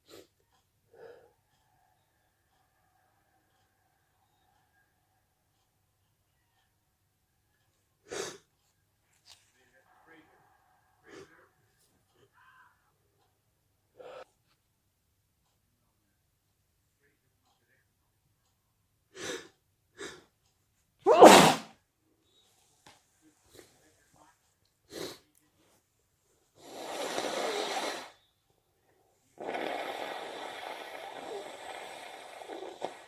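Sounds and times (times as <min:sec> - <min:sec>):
short puff of air: 0:21.1 - 0:21.7, 0:26.6 - 0:28.2.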